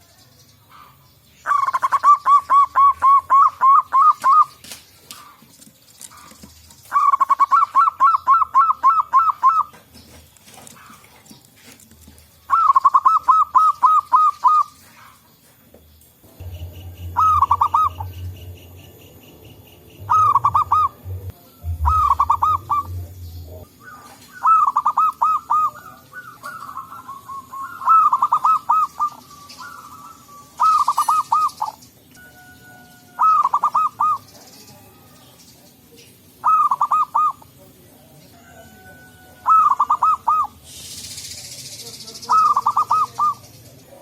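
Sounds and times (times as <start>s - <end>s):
doves cooing: 0.7s - 35.3s, 36.0s - 37.6s, 38.3s - 40.8s, 42.3s - 44.0s
low rumble: 16.2s - 23.8s.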